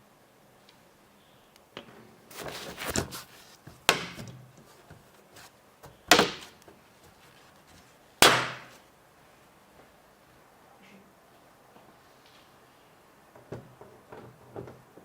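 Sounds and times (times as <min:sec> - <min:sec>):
sharp knocks: 0:05.9 - 0:06.6, 0:08.2 - 0:08.8.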